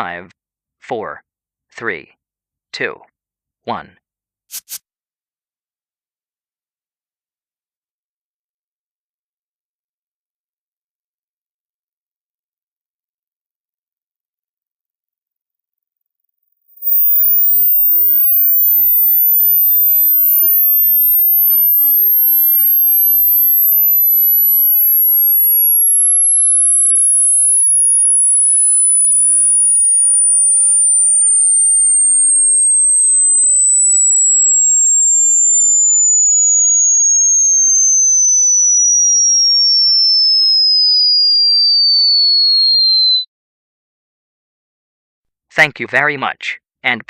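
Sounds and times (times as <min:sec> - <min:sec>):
sine tone sweeping downward: 0:16.6 - 0:43.3.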